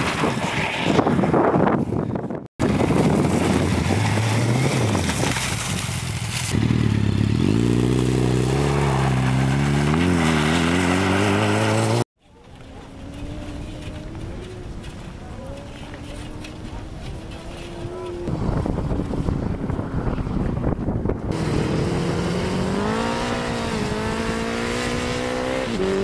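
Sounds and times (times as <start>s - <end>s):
motorcycle engine revving: 2.6s - 12.1s, 15.4s - 18.6s, 21.2s - 26.0s.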